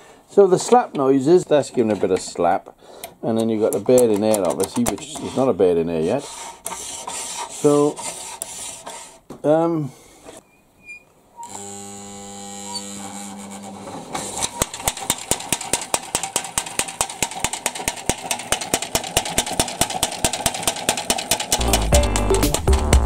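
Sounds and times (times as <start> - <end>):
slide knocking back and forth: 3.3 - 9.2, 13.8 - 23.0
electric motor humming: 11.4 - 14.4.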